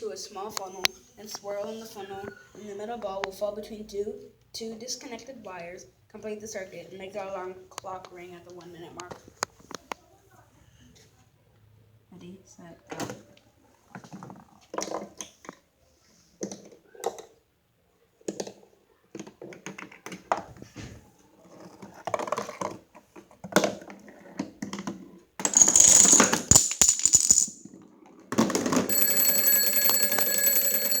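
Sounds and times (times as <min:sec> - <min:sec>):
marble and dominoes clicking: 0:25.4 - 0:27.6
alarm clock bell ringing: 0:28.9 - 0:31.0.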